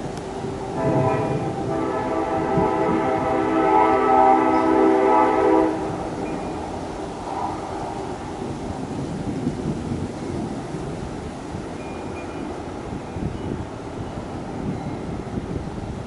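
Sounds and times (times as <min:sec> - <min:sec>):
rain: 0:00.0 - 0:16.0
wind: 0:00.0 - 0:16.0
train horn chord: 0:00.2 - 0:08.6.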